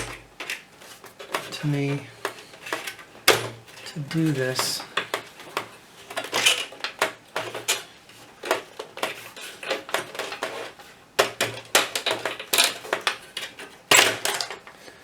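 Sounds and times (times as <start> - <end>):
sheet metal clicks and clanks: 0.0 - 0.6.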